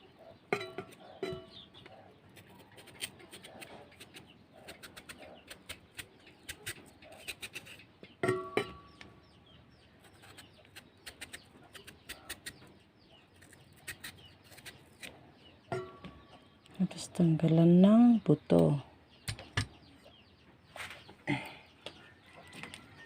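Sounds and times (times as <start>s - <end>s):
chickens clucking: 0.0s - 23.0s
small birds chirping: 0.0s - 23.0s.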